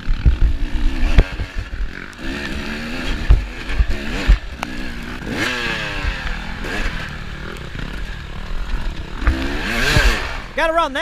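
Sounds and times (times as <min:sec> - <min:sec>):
low thumps: 0:00.0 - 0:10.6
dirt bike engine revving: 0:00.0 - 0:11.0.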